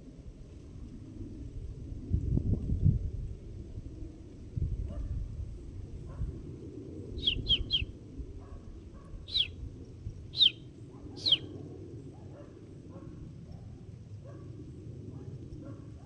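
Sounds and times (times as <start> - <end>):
bird chirping: 7.2 - 7.9, 9.3 - 9.6, 10.3 - 10.6, 11.2 - 11.5.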